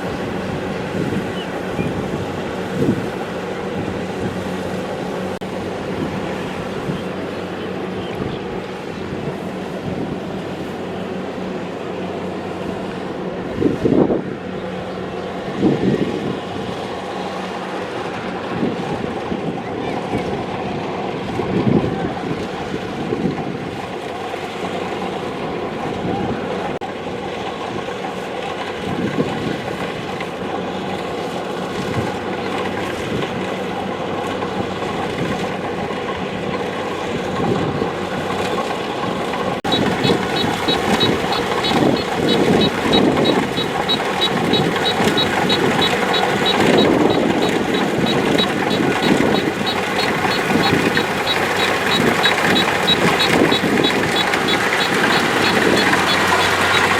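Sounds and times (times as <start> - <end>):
combine harvester engine running: 0.0 - 56.9
rapid high-pitched electronic beeping: 39.7 - 56.9.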